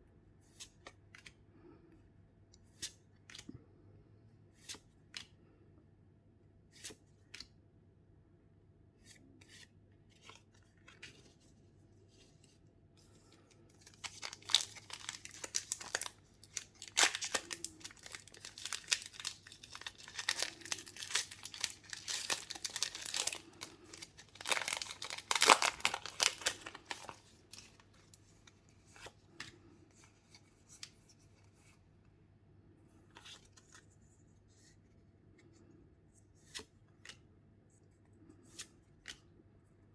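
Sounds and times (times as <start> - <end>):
plastic wrapping tearing and crinkling: 13.9 - 27.8.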